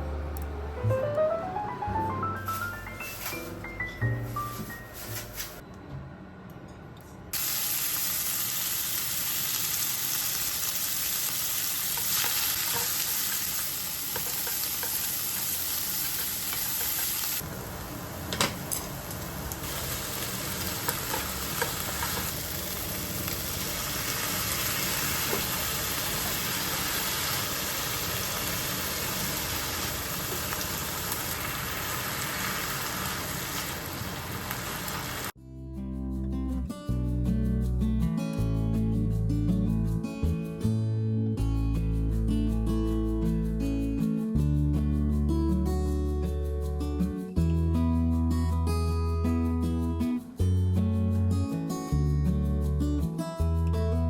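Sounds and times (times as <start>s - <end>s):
food sizzling in a pan: 7.4s - 35.4s.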